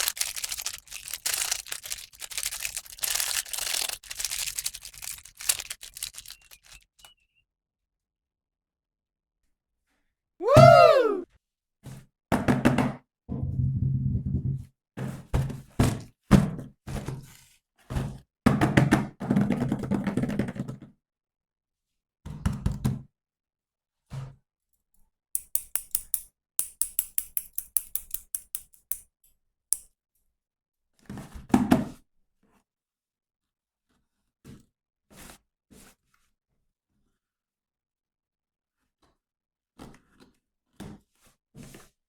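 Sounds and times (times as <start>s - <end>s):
plastic toys knocking: 0.0s - 6.8s
sharp clicks: 0.0s - 7.1s.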